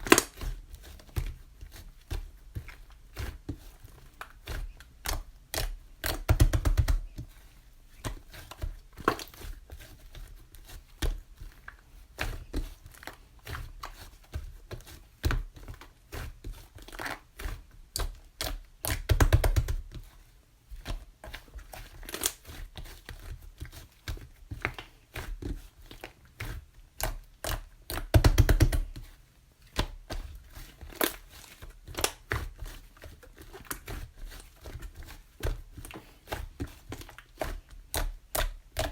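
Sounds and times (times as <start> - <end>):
crinkling: 0.0 - 28.0
small taps and clicks: 5.0 - 7.3, 18.0 - 19.8, 27.0 - 29.1.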